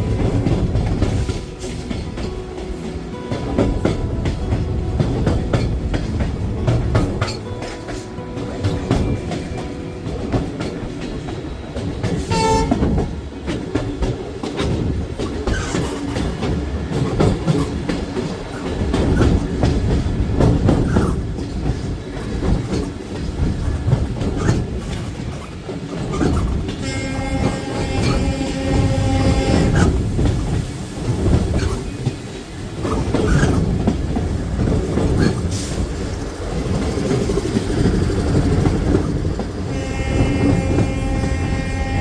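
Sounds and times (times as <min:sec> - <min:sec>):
train horn: 0:00.0 - 0:05.7, 0:11.6 - 0:13.2, 0:26.7 - 0:30.2, 0:39.6 - 0:42.0
train wheels clattering on track: 0:00.0 - 0:42.0.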